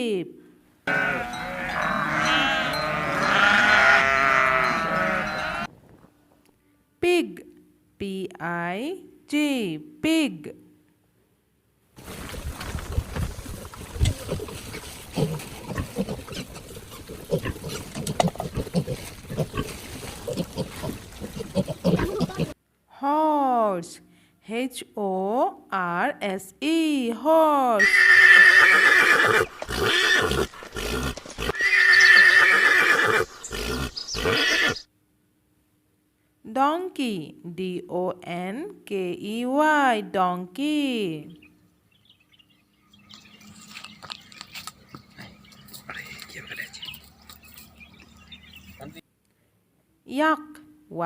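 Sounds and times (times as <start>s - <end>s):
horse whinnying: 0.9s - 5.7s, 27.8s - 34.9s
pigs grunting: 12.8s - 22.6s, 27.8s - 34.8s.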